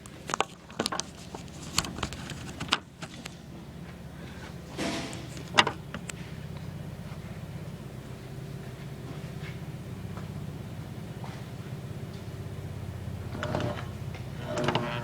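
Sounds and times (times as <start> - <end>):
model train motor humming: 12.0 - 15.0.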